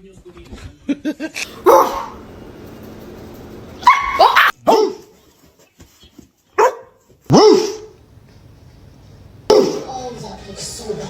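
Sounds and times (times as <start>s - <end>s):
dog barking: 1.5s - 2.3s, 3.8s - 5.1s, 6.6s - 8.0s, 9.5s - 9.9s.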